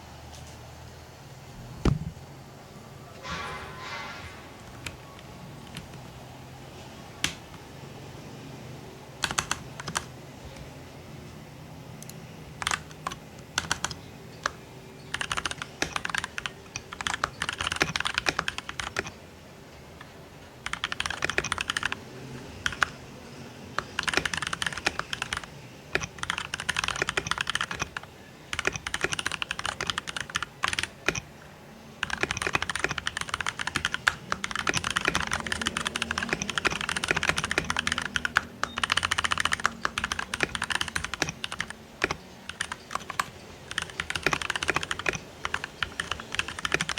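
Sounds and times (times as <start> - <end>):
typing on mechanical keyboard: 9.2 - 10.1, 12.0 - 19.2, 20.0 - 23.0, 23.8 - 31.3, 32.0 - 46.9.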